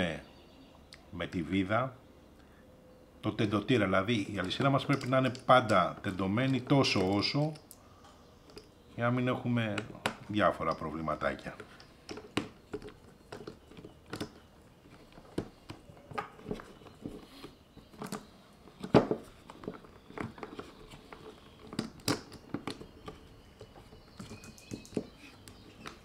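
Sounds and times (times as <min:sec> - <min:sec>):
hands clicking and knocking tool: 0:04.4 - 0:07.8, 0:09.7 - 0:26.0.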